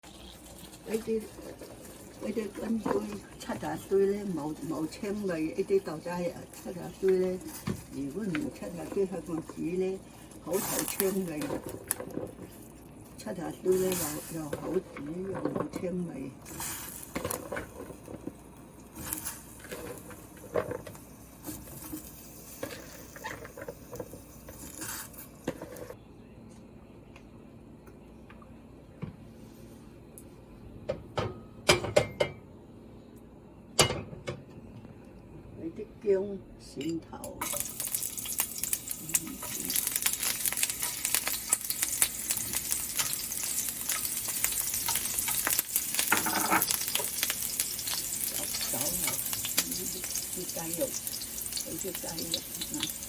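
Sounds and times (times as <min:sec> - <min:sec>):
food sizzling in hot oil: 0:00.0 - 0:12.0, 0:16.4 - 0:18.1, 0:18.8 - 0:25.2, 0:37.4 - 0:53.0.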